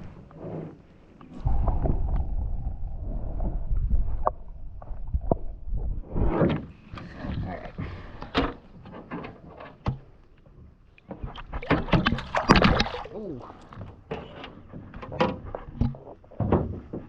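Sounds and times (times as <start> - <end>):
wind rumbling on microphone: 0.0 - 8.1.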